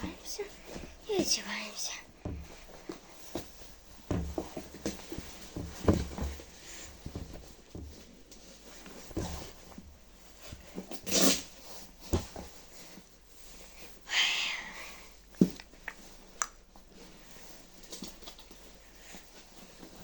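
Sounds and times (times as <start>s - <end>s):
clothing rustle: 0.0s - 14.1s, 15.4s - 20.0s
soft knocks and thumps: 2.0s - 10.9s, 12.0s - 12.7s.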